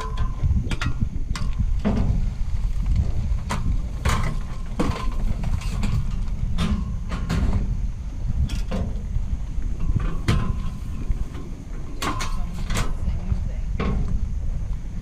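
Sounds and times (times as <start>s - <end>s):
sharp knocks and rattles: 0.0s - 13.1s
van engine rumbling: 0.0s - 15.0s.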